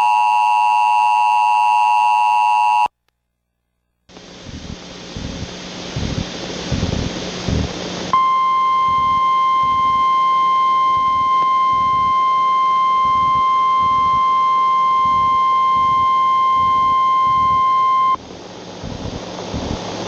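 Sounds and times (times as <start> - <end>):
static hiss: 3.1 - 20.0
high-pitched warning beep: 8.2 - 18.2.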